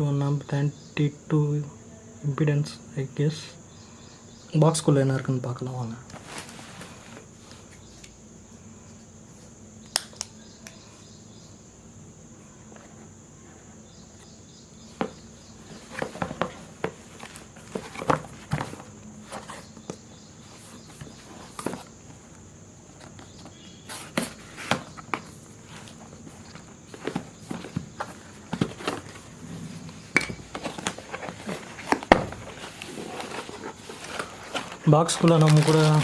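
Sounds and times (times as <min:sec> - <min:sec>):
cardboard and plastic packaging rustling: 0:06.1 - 0:08.0, 0:14.8 - 0:36.0.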